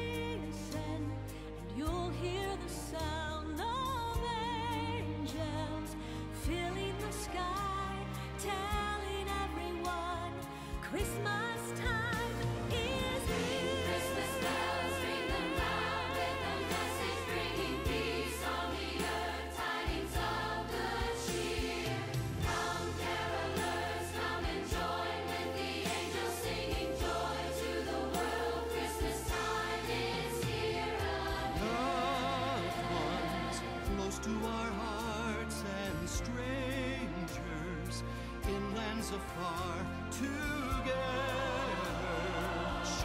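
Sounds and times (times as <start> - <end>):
band accompaniment: 6.5 - 43.0
choir singing: 11.6 - 36.0, 40.6 - 43.0.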